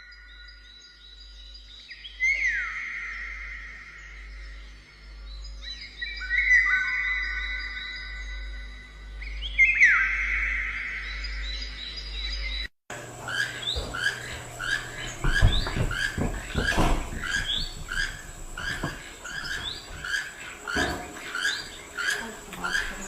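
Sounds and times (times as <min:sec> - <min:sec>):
bird chirping rising notes: 0:01.0 - 0:23.0
low thumps: 0:13.6 - 0:22.0.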